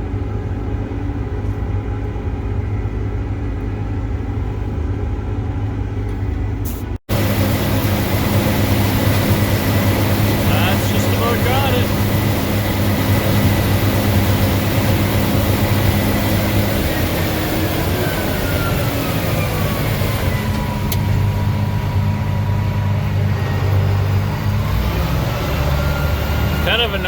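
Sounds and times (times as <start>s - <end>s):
combine harvester engine hum: 0.0s - 27.0s
gliding whine: 7.1s - 22.4s.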